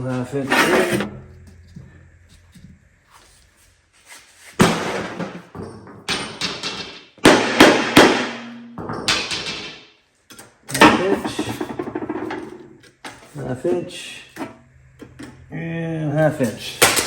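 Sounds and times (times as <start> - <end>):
hammer clanging on metal: 6.1 - 12.6.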